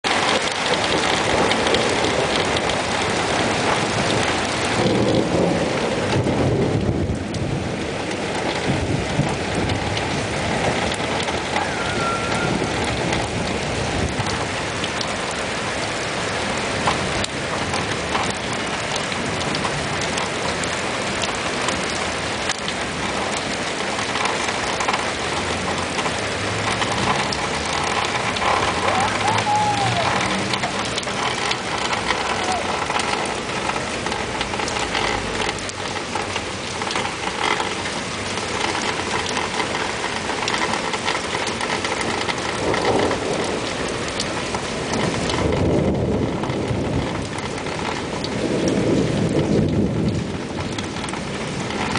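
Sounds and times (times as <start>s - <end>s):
heavy rain pattering: 0.0s - 51.9s
thunder rumble: 0.1s - 51.9s.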